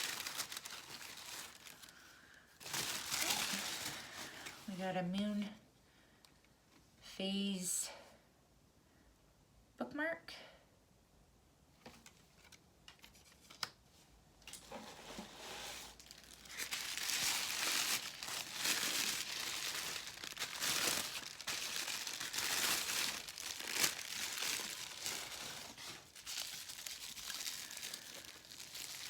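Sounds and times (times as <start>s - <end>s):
tissue paper crinkling: 0.0s - 4.9s, 14.9s - 29.0s.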